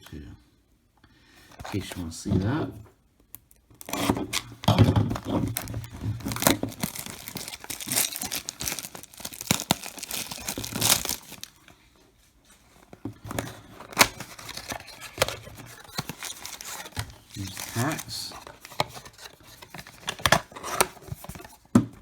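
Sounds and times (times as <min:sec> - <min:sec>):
foil packs crinkling: 0:03.7 - 0:11.7, 0:13.3 - 0:21.5
cardboard and wrapping tearing: 0:03.8 - 0:11.6, 0:13.3 - 0:21.5.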